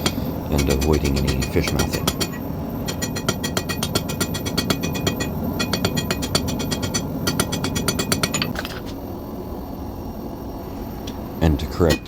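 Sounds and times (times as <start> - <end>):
hammer striking hot steel on anvil: 0.0 - 8.6, 11.8 - 12.0.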